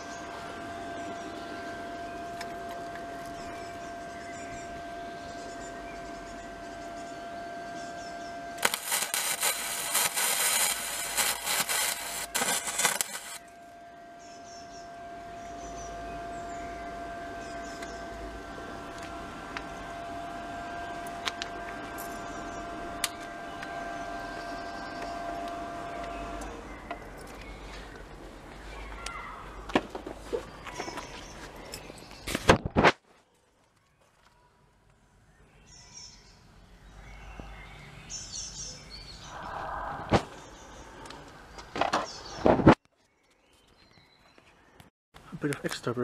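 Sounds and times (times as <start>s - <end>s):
steady hum: 0.0s - 32.8s, 38.7s - 42.0s
crackling welding arc: 8.6s - 13.5s.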